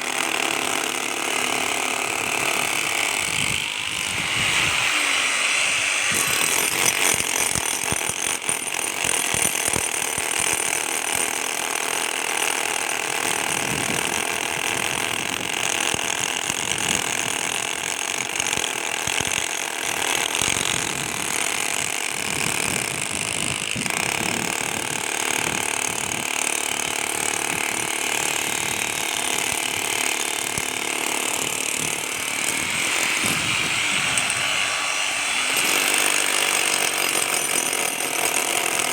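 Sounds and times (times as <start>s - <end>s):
power tool hammering concrete: 0.0s - 38.9s.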